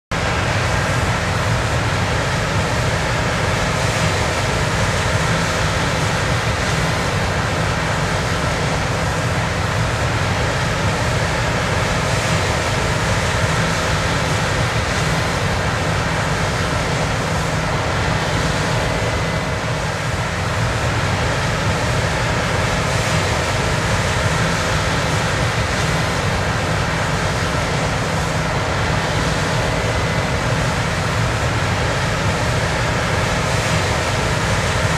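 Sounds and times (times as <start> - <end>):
machinery engine hum: 0.2 - 34.9.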